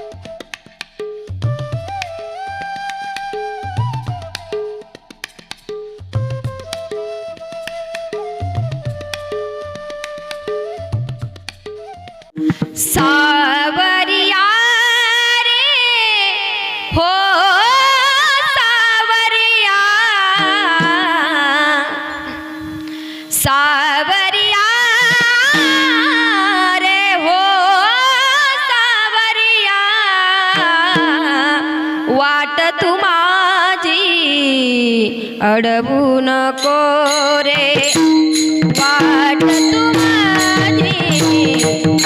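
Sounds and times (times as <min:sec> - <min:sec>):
woman singing: 0:12.7 - 0:42.0.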